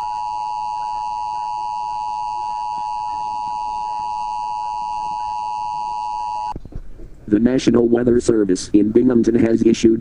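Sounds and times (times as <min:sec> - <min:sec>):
steady high electronic tone: 0:00.0 - 0:06.6.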